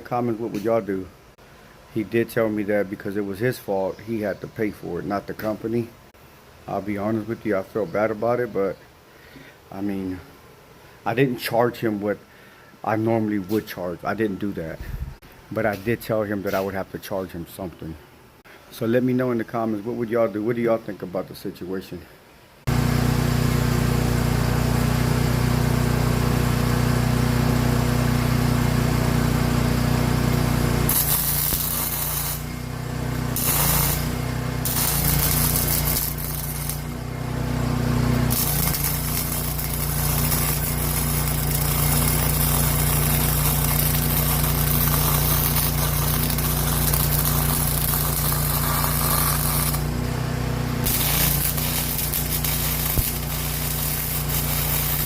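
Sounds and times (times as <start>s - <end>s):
angle grinder grinding steel: 29.5s - 55.0s.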